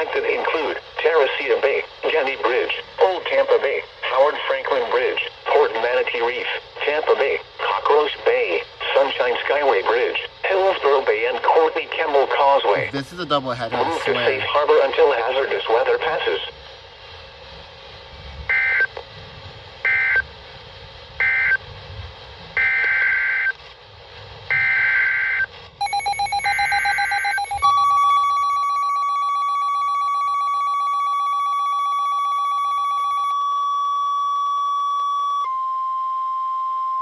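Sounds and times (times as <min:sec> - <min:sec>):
rapid electronic beeping: 0:25.8 - 0:33.3
steady warning alarm tone: 0:25.8 - 0:35.4.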